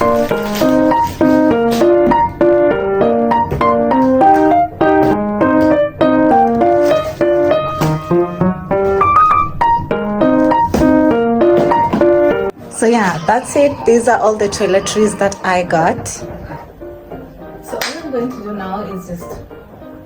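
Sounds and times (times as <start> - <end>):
piano playing quick notes: 0.0 - 13.2.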